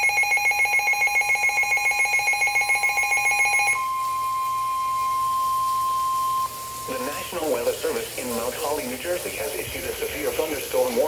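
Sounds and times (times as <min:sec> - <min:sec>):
rapid pulsing alarm beeps: 0:00.0 - 0:07.2
steady alarm tone: 0:00.0 - 0:07.6.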